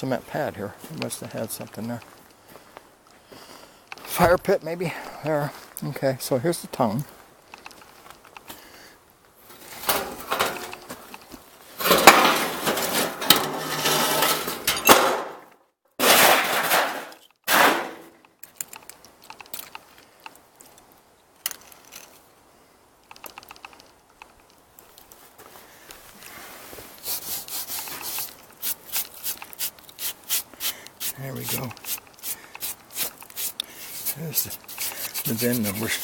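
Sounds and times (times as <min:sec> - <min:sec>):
scraping and clanking on metal: 0:11.8 - 0:15.0, 0:16.0 - 0:18.0
light clicks and taps: 0:23.0 - 0:25.2.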